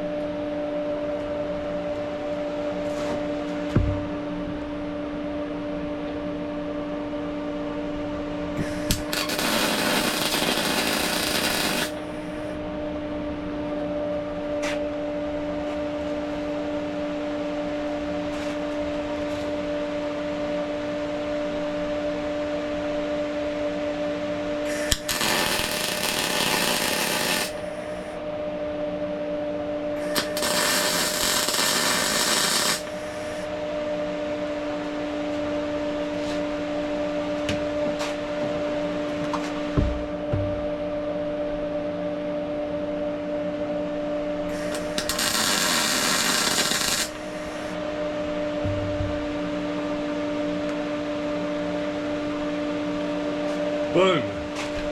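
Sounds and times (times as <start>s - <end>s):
electrical hum: 0.0s - 54.9s
electric welder hissing: 8.6s - 12.6s, 24.7s - 28.1s, 30.0s - 33.5s, 44.5s - 47.8s.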